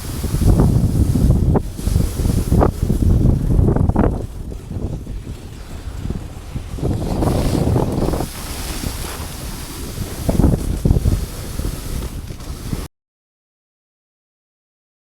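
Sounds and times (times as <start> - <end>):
wind buffeting microphone: 0.0 - 12.9.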